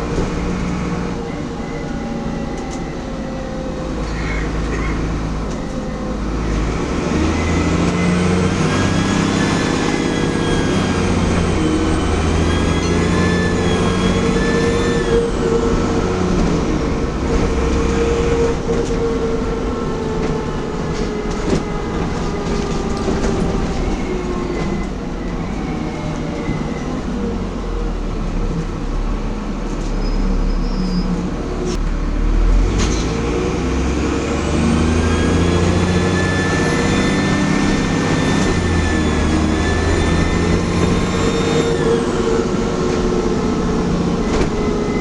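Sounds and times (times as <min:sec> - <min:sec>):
bus diesel engine running: 0:00.0 - 0:45.0.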